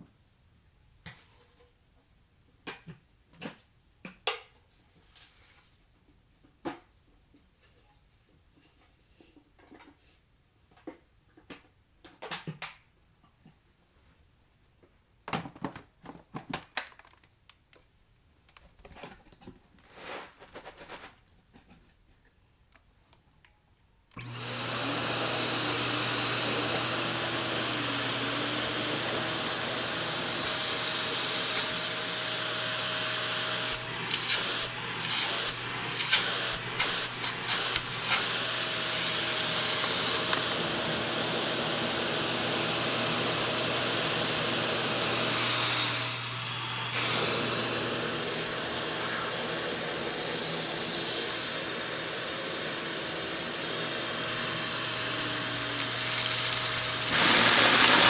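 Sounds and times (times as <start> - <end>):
vacuum cleaner running: 24.2 - 58.0
debris crackling in vacuum: 54.8 - 58.0.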